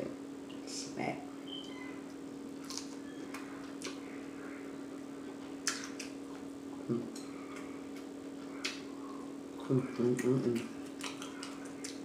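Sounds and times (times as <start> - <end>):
steady low hum: 0.0 - 12.0
mouth smacking and chewing: 2.6 - 4.0, 5.6 - 12.0.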